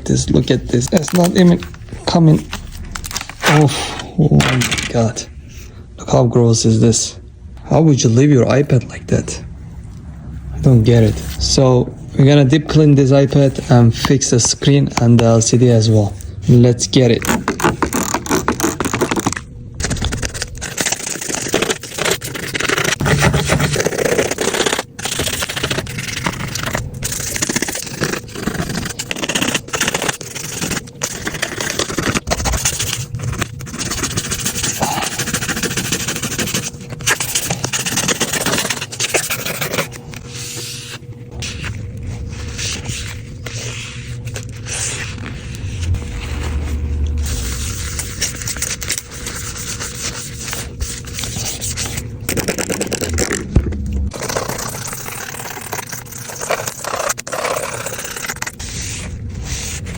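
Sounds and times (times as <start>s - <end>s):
grime being scraped off a tablet: 14.9s - 53.5s, 54.1s - 59.9s.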